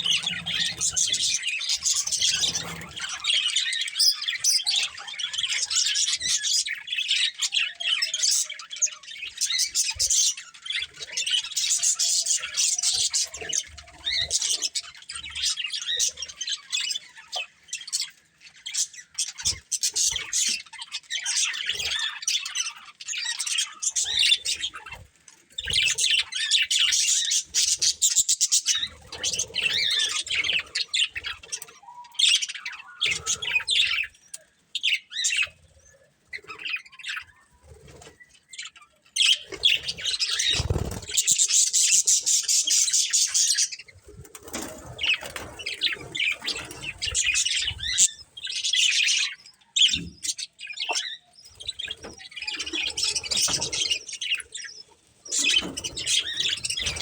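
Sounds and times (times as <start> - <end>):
budgies chattering and chirping: 0.0 - 57.0.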